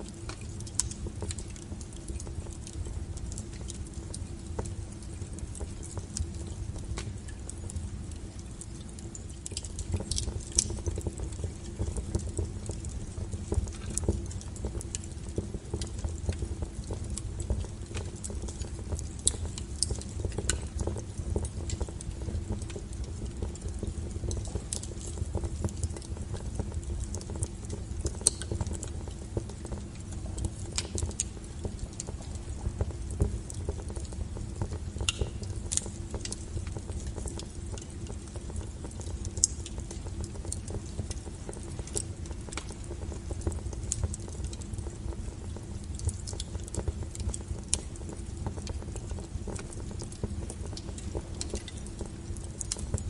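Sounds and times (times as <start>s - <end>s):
low rumble of flames: 0.0s - 53.0s
wood fire crackling: 0.0s - 53.0s.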